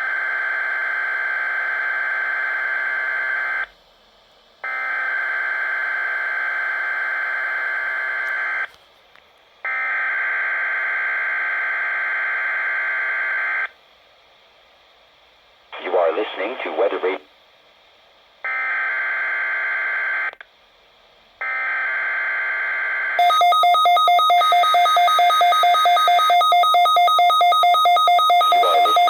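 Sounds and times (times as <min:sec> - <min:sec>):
buzzy digital data tones: 0:23.2 - 0:29.0.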